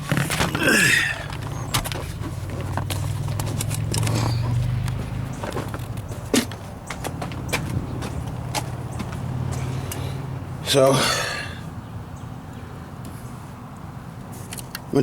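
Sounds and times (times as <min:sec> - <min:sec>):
handling clicks and knocks: 0:00.0 - 0:10.1.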